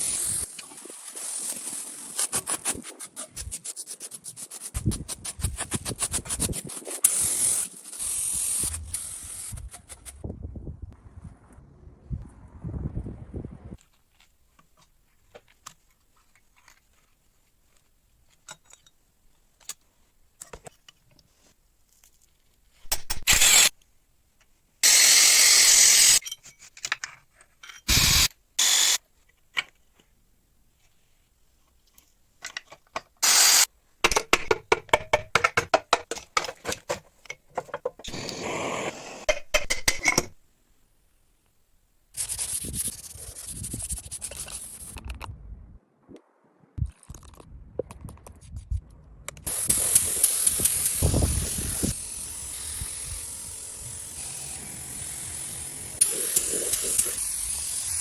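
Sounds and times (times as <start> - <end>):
power tool bursts: 24.8 - 26.2, 27.9 - 29.0, 33.2 - 33.7, 49.5 - 58.0.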